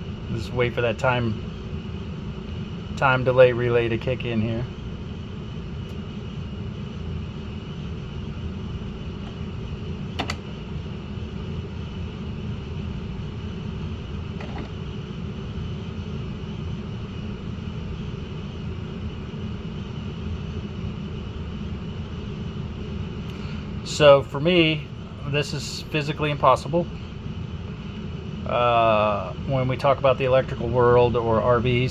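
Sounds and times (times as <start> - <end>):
air conditioner humming: 0.0 - 31.9
sharp click: 10.2 - 10.4.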